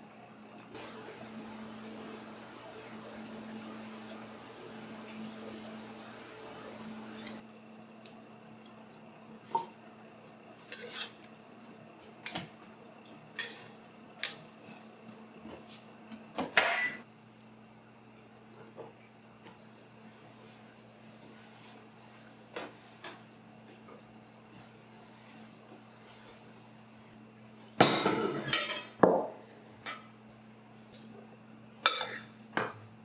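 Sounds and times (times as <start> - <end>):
dishes and cutlery clinking: 31.9 - 32.4.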